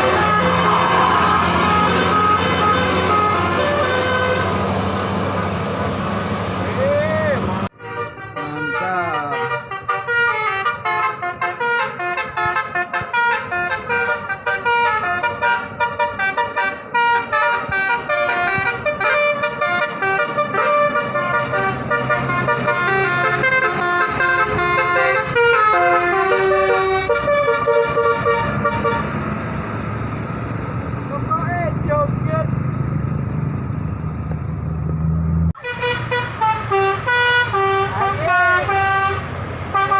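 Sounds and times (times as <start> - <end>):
musical bus air horn tune: 0.0 - 4.7, 7.7 - 29.2, 35.6 - 39.9.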